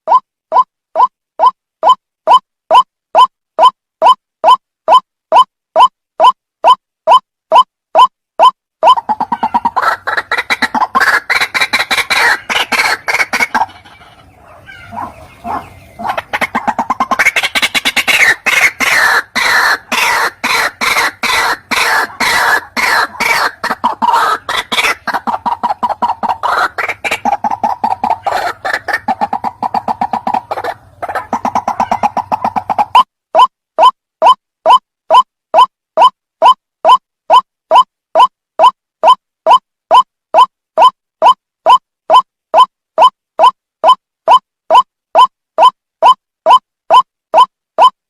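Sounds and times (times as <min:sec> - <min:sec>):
waterhen harsh repeated calls: 0:00.1 - 0:47.9.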